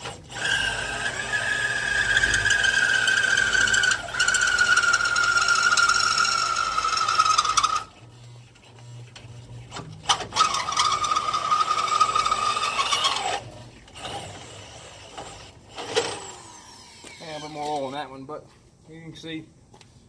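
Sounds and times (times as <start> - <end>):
electric drill cutting steel: 0.0 - 8.0, 10.1 - 17.7.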